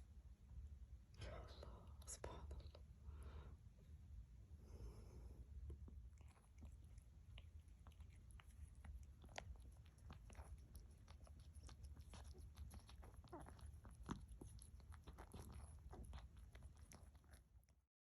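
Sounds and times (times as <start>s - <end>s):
low steady hum: 0.0s - 17.9s
cat licking and chewing: 5.6s - 17.9s.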